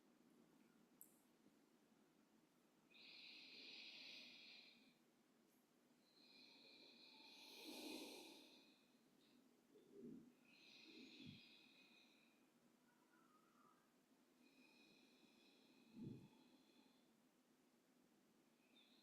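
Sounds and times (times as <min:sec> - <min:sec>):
slow breathing: 0:02.9 - 0:05.1, 0:06.0 - 0:17.2.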